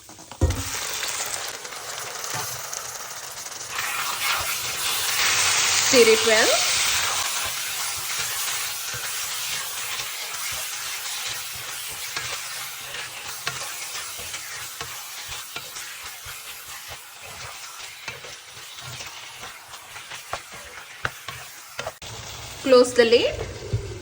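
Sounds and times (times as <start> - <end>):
chicken sizzling in hot oil: 0.0 - 24.0
utensil scraping a pan: 3.7 - 22.0.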